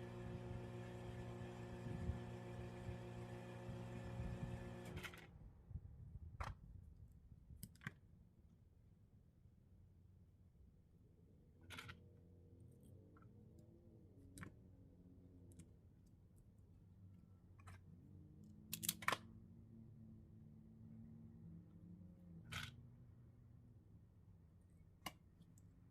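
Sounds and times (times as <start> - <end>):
hand tool clicks and snips: 18.7 - 19.2.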